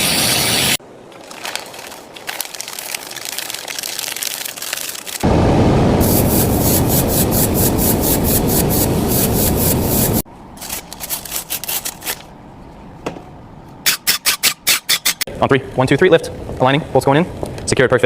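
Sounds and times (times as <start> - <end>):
sanding car bodywork: 6.0 - 10.2.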